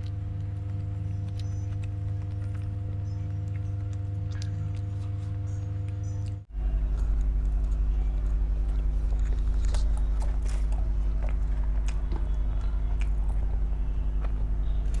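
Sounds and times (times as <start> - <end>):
low electrical hum: 0.0 - 15.0
person chewing food: 0.0 - 15.0.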